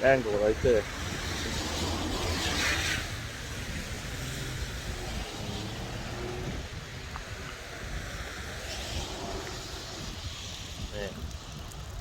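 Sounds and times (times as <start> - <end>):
street traffic rumble: 0.0 - 12.0
vehicle passing: 0.7 - 6.8.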